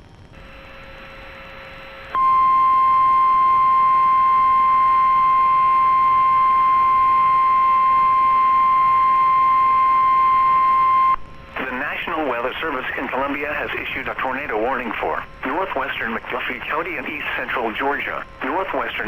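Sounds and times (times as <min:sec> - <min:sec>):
faint radio static: 0:00.4 - 0:19.0
steady alarm tone: 0:02.1 - 0:11.2.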